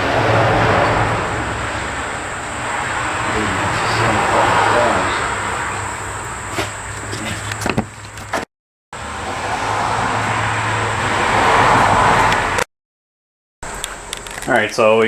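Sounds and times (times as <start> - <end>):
vehicle engine running: 0.0 - 8.4.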